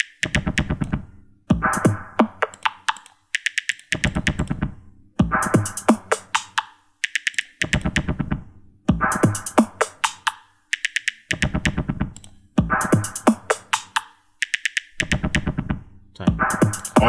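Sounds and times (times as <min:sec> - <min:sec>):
clicky percussion ticks: 0:02.4 - 0:04.5, 0:05.8 - 0:08.1, 0:09.4 - 0:15.4.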